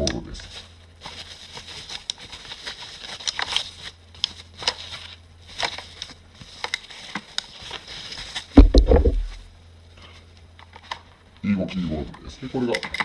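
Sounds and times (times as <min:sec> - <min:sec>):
keyboard thumping on desk: 0:08.6 - 0:09.3.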